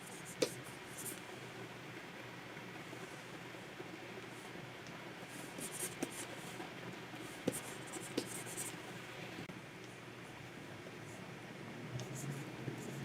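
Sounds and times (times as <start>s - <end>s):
steady low hiss: 0.0s - 13.0s
stylus scratching on screen: 5.4s - 6.6s, 7.4s - 8.8s.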